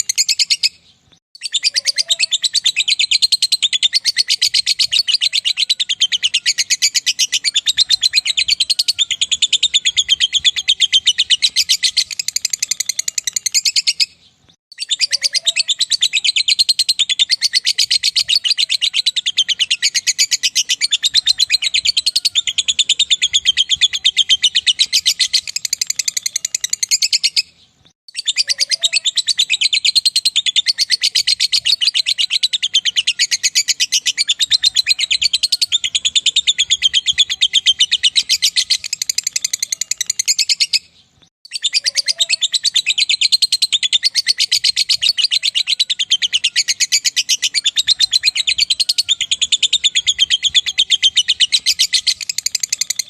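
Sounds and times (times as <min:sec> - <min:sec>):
lovebird chattering trill: 0:00.0 - 0:00.8, 0:01.4 - 0:14.2, 0:14.8 - 0:27.5, 0:28.1 - 0:40.9, 0:41.5 - 0:53.0.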